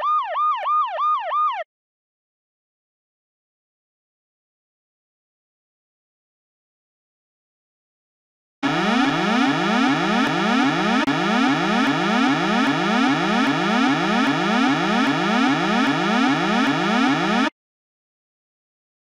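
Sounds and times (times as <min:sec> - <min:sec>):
electronic alarm siren: 0:08.6 - 0:17.6.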